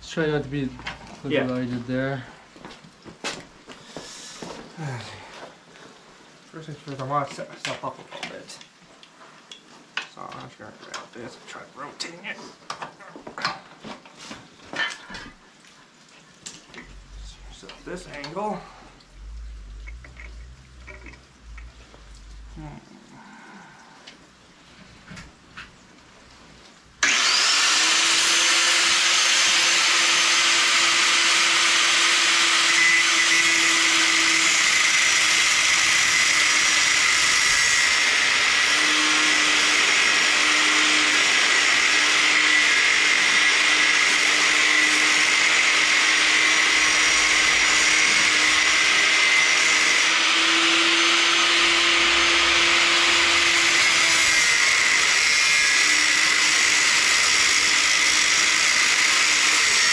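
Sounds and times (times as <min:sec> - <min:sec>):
angle grinder grinding metal: 0:16.7 - 0:22.8, 0:27.0 - 0:59.9.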